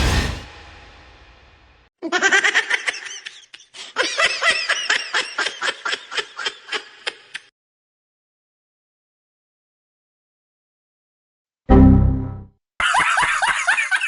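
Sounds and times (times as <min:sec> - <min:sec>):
person laughing hard: 0:02.0 - 0:07.5, 0:12.8 - 0:14.0.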